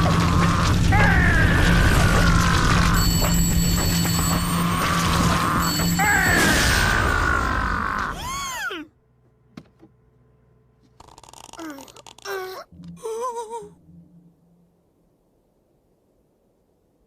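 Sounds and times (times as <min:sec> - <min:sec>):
music: 0:12.6 - 0:15.4.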